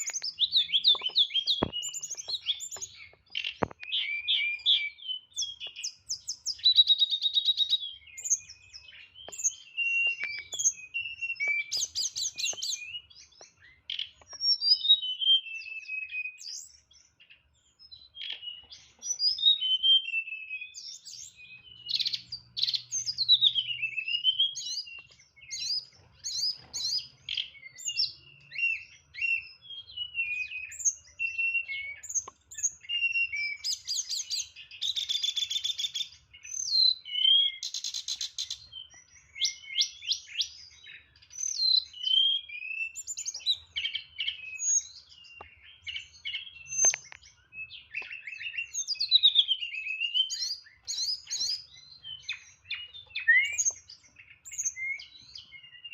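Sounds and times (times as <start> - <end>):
songbird singing: 0.0 - 55.9.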